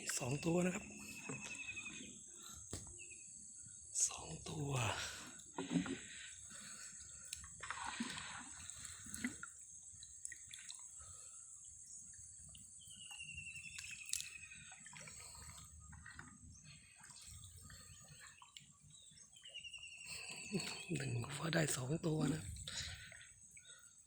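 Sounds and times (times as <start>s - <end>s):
water dripping and splashing: 4.8s - 19.5s.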